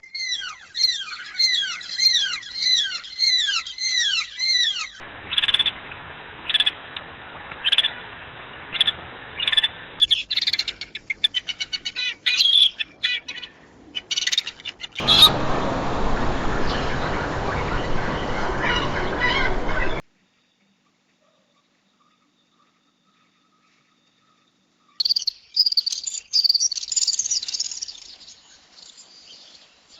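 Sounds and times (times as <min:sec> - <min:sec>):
background hiss: 0:13.5 - 0:29.9
downward-sliding bird calls: 0:14.1 - 0:20.0.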